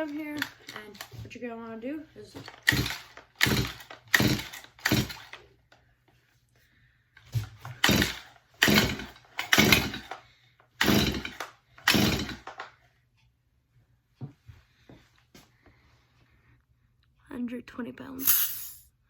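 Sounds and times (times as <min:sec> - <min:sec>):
chainsaw recoil starter pulls: 0:00.0 - 0:01.2, 0:02.4 - 0:05.5, 0:07.6 - 0:10.2, 0:10.8 - 0:12.7
engine cranking over: 0:02.4 - 0:05.4, 0:07.7 - 0:10.2, 0:10.8 - 0:12.6.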